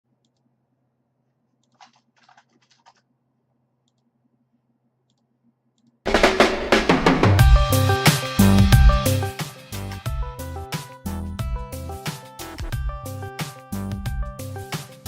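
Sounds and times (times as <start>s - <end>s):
ringtone with drums and bass: 7.3s - 15.0s.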